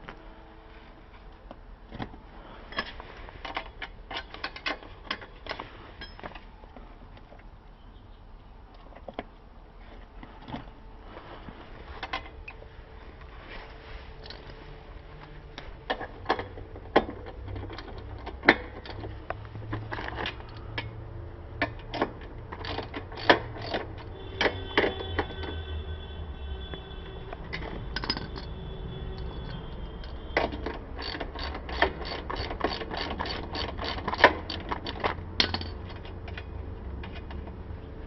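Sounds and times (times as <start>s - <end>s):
metal tools clicking and clinking: 2.7s - 6.5s, 15.9s - 21.0s, 21.6s - 25.6s, 27.4s - 37.4s.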